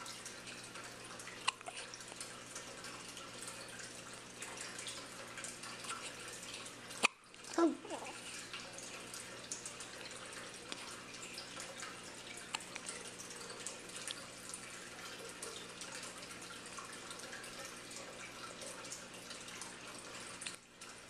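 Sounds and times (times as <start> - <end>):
hiccups: 1.4 - 1.9, 7.0 - 8.2.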